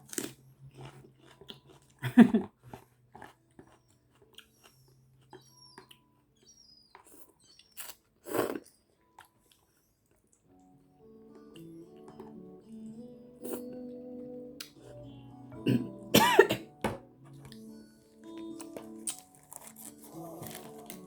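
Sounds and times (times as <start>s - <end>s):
chewing and mouth noises: 0.0s - 10.8s, 17.2s - 21.0s
soft background music: 0.0s - 21.0s.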